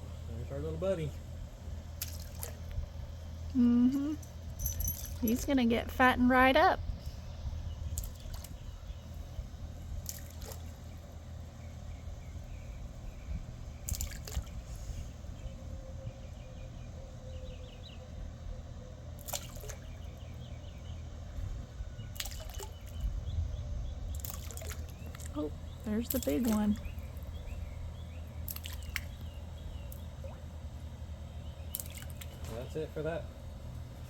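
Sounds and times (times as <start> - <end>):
water splashing: 2.0 - 2.7, 10.0 - 10.8, 13.9 - 14.6, 22.2 - 22.9, 24.2 - 27.0, 28.4 - 29.2, 31.7 - 32.6
water dripping: 24.2 - 27.3, 28.4 - 29.3, 31.7 - 32.5.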